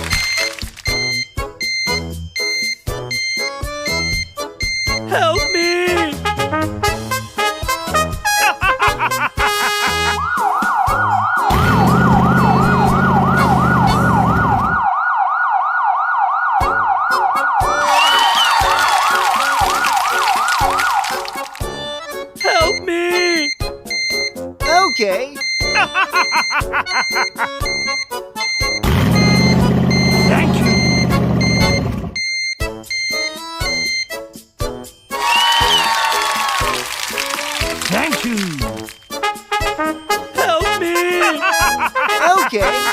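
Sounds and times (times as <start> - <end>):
synthesizer keyboard tune: 9.4 - 15.3, 21.7 - 34.0
emergency siren fast yelp: 9.7 - 21.1, 35.2 - 36.6.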